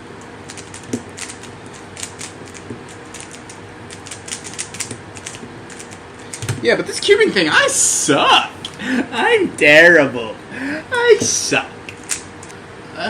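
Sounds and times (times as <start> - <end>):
rubik's cube clicking: 0.5 - 6.0, 11.9 - 12.2.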